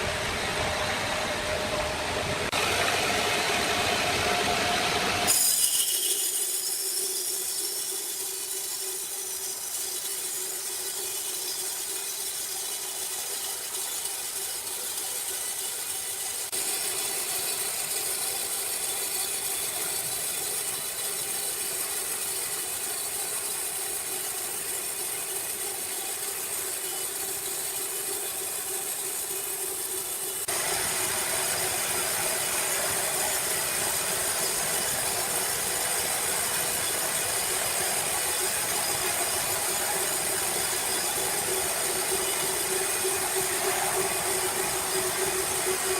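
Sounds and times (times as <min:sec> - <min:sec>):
sawmill machinery humming: 0:00.0 - 0:45.9
mechanical clatter: 0:05.3 - 0:45.9.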